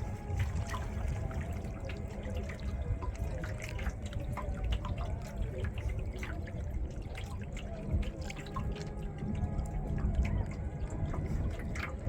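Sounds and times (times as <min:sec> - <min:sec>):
water dripping off paddle: 0:00.0 - 0:12.0.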